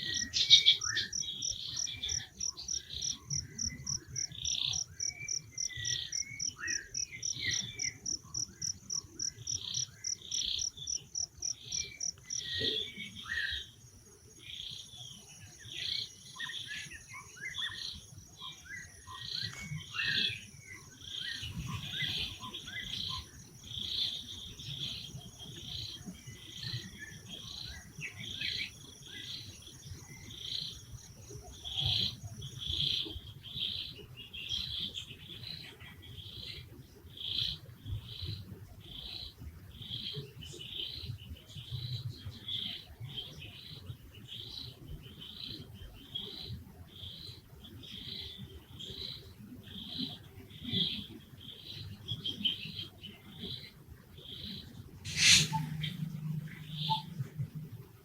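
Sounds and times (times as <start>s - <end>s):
short high chirps: 55.1s - 56.0s
insect trilling: 55.1s - 57.2s
low rumbling noise: 55.1s - 58.0s.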